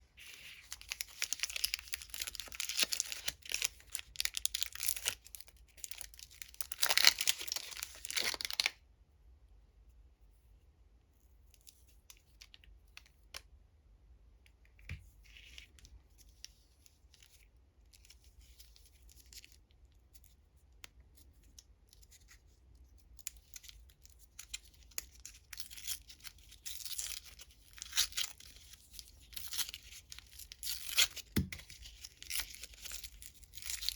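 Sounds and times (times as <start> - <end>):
plastic wrappers crinkling and tearing: 0.2 - 8.8, 24.4 - 33.9.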